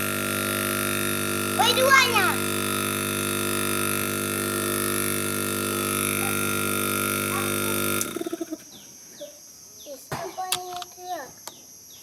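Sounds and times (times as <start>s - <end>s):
electric motor buzzing hum: 0.0s - 8.7s.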